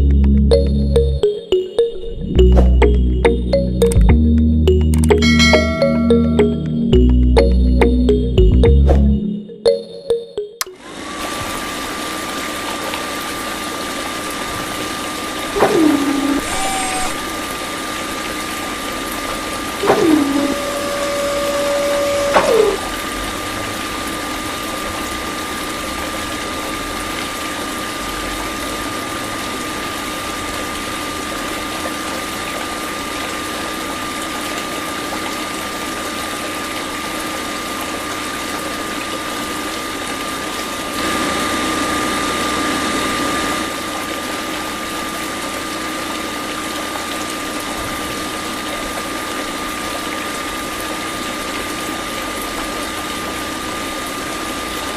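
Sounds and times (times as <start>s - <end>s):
higher falling whine: 0.0s - 11.2s, 19.8s - 23.1s
water pump motor whine: 10.8s - 32.0s, 40.9s - 46.4s.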